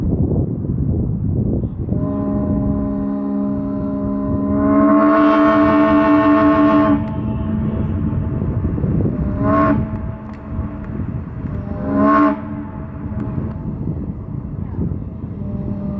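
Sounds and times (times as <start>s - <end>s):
wind rumbling on microphone: 0.0s - 15.9s
steamboat horn blast: 1.8s - 15.9s.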